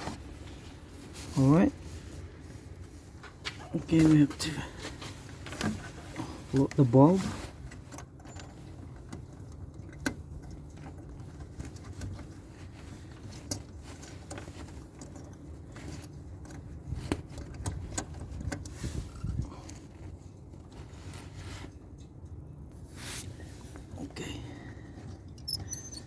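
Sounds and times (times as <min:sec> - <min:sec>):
low background rumble: 0:00.0 - 0:26.0
small clicks and rattles: 0:07.6 - 0:19.9.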